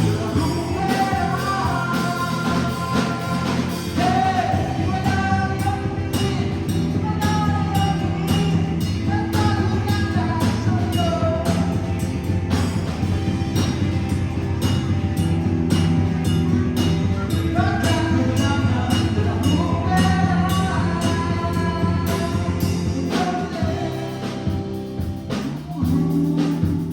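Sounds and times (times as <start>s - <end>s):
person singing: 0.0s - 12.1s, 17.1s - 24.8s, 25.6s - 26.9s
drum beat: 0.0s - 26.9s
guitar: 0.0s - 26.9s.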